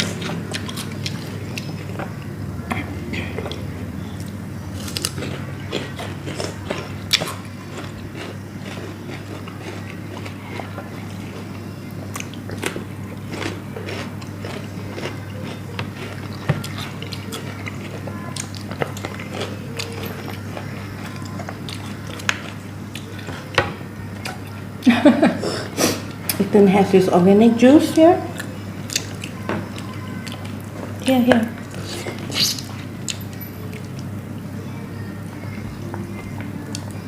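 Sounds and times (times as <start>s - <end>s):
biting and chewing: 0.0s - 24.6s.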